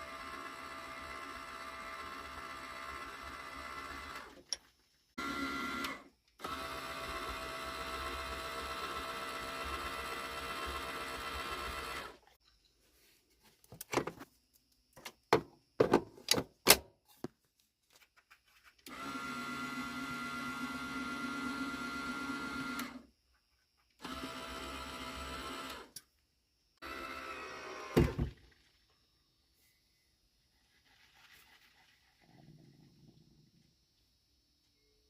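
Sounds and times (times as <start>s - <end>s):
geared motor whining: 18.9s - 23.1s, 24.0s - 26.0s.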